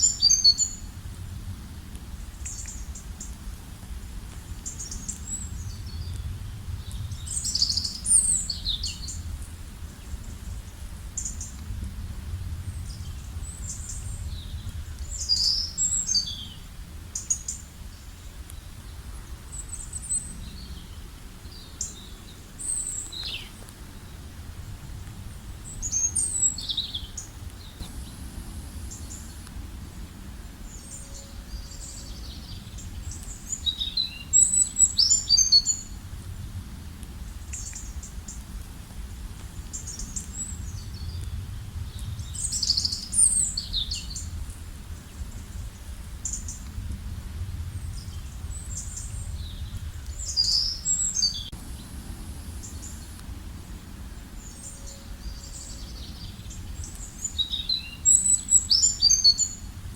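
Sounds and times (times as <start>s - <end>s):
songbirds chirping and trilling: 0.0s - 1.4s, 2.1s - 3.5s, 4.3s - 36.1s, 37.0s - 46.9s, 47.6s - 59.9s
low background noise: 0.0s - 59.9s.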